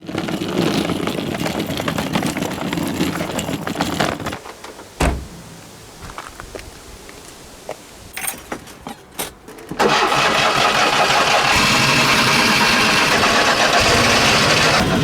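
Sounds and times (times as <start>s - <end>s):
engine cranking and clattering: 0.0s - 6.0s, 8.2s - 15.0s
loud thump: 5.0s - 6.2s.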